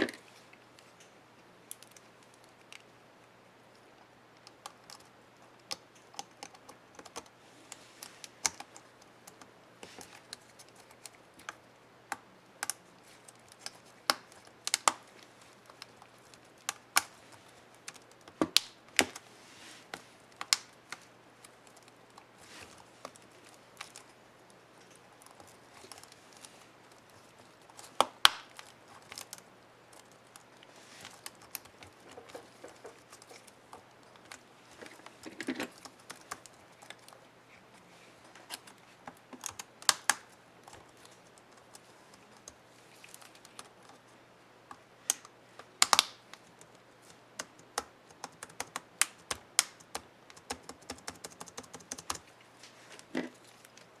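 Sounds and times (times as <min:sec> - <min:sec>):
laptop keyboard keys clicking: 0:04.4 - 0:07.4, 0:08.0 - 0:15.1, 0:25.2 - 0:37.2, 0:38.6 - 0:44.0, 0:45.1 - 0:52.3.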